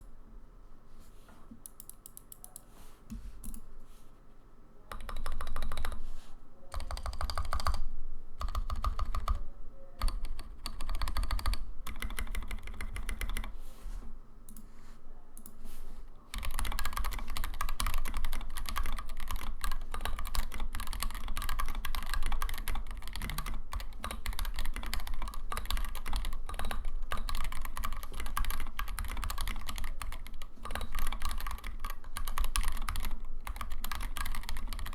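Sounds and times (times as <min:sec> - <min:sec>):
typing on mechanical keyboard: 0:04.9 - 0:06.0, 0:06.7 - 0:07.8, 0:08.4 - 0:09.4, 0:10.0 - 0:13.5, 0:16.3 - 0:34.9.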